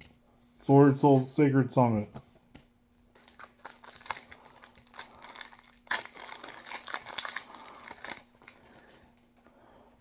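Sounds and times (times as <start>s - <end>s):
plastic foil wrapper crackling: 3.1s - 8.9s.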